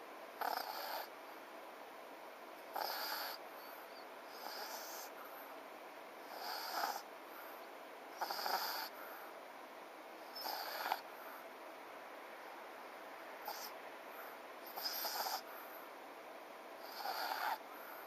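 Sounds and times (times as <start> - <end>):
dog snoring: 0.4 - 1.1, 2.7 - 5.2, 6.2 - 7.1, 8.1 - 9.2, 10.3 - 11.3, 13.4 - 15.8, 16.8 - 18.0.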